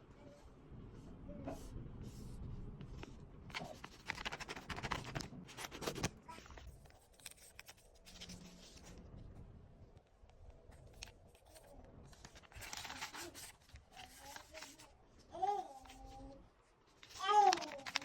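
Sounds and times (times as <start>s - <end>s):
paper crinkling and rustling: 2.9s - 9.1s, 10.7s - 16.3s, 16.9s - 18.0s.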